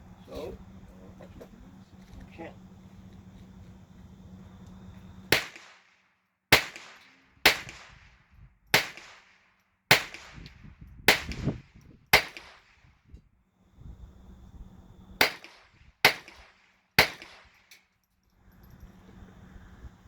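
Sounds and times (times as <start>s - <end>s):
gunshots with echo: 5.3s - 5.9s, 6.5s - 8.1s, 8.7s - 10.5s, 11.1s - 12.8s, 15.2s - 17.5s.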